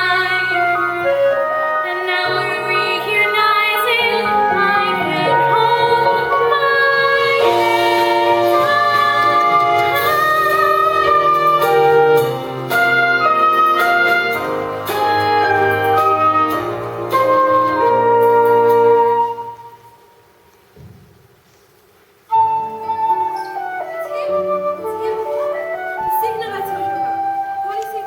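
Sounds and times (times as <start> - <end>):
musical theatre song: 0.0 - 28.0.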